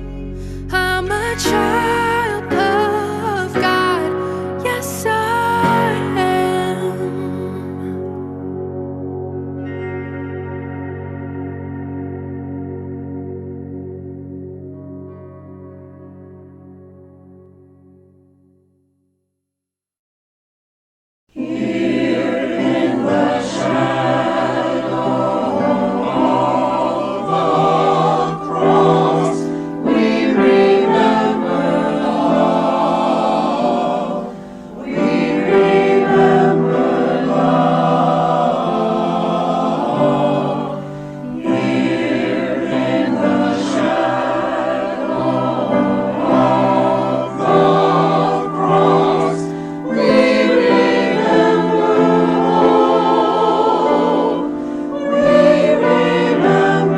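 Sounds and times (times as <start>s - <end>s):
choir singing in harmony: 0.9s - 10.0s, 21.3s - 56.9s.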